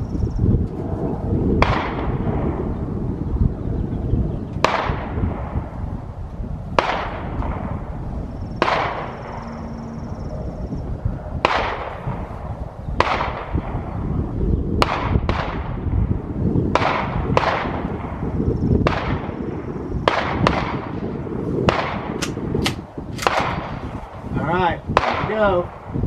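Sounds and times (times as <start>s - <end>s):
echoing gunshots: 6.8s - 7.9s, 8.6s - 9.6s, 11.4s - 12.2s, 13.0s - 13.8s, 21.6s - 24.2s, 24.9s - 25.9s.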